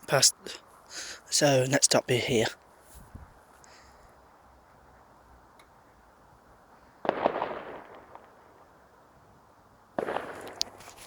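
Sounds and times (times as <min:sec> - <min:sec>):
fireworks bangs and crackling: 0:07.0 - 0:08.7, 0:10.0 - 0:11.0.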